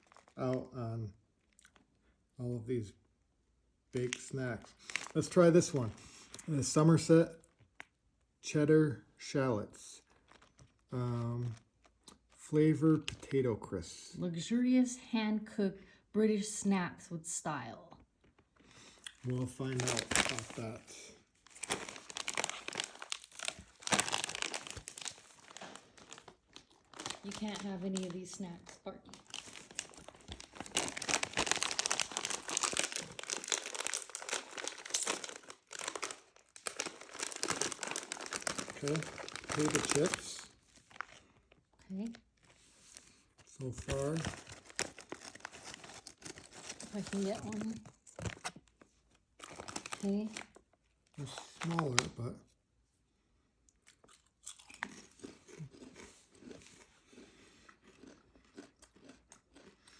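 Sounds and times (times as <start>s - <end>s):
crisp packet crinkling: 0.0s - 0.7s, 4.0s - 7.9s, 10.0s - 12.3s, 18.2s - 52.2s.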